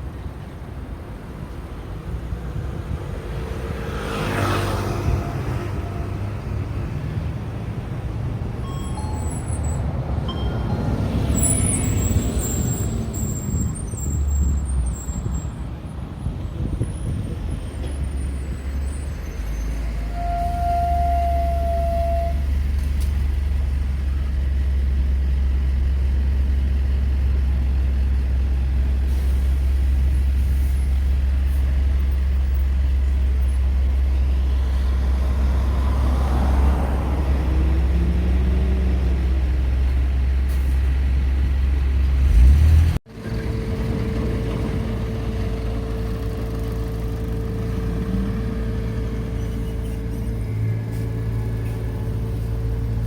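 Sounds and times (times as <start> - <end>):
engine hum with held tone: 0.0 - 53.0
low engine hum: 21.4 - 53.0.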